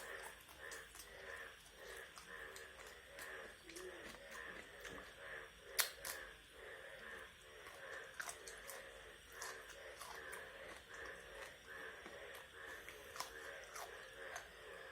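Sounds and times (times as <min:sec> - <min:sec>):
wet chewing mouth sounds: 0:00.0 - 0:14.9
sharp crunching clicks: 0:05.7 - 0:06.3, 0:07.7 - 0:14.5.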